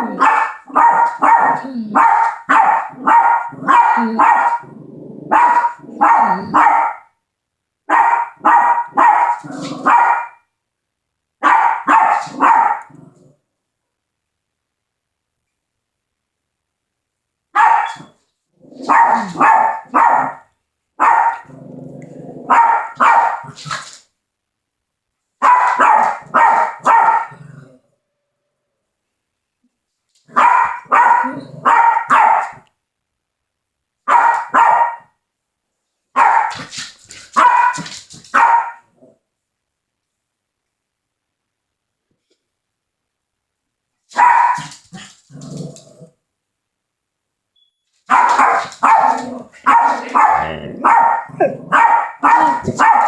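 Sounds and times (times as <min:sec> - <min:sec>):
dogs barking: 0:00.0 - 0:04.7, 0:05.3 - 0:07.1, 0:07.9 - 0:10.4, 0:11.4 - 0:12.9, 0:17.6 - 0:18.1, 0:18.8 - 0:20.4, 0:21.0 - 0:21.5, 0:22.5 - 0:23.6, 0:25.4 - 0:27.4, 0:30.3 - 0:32.6, 0:34.1 - 0:35.1, 0:36.2 - 0:36.8, 0:37.4 - 0:38.9, 0:44.2 - 0:45.1, 0:48.1 - 0:53.0
dog growling: 0:02.9 - 0:06.6, 0:12.3 - 0:13.4, 0:21.4 - 0:22.6, 0:27.3 - 0:27.9, 0:31.2 - 0:31.7, 0:44.8 - 0:46.2, 0:49.0 - 0:52.8.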